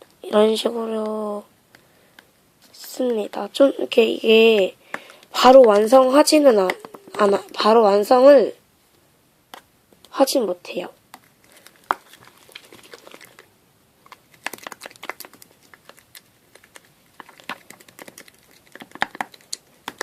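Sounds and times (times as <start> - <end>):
slime stirring crackling: 2.7 - 8.2, 11.1 - 20.0.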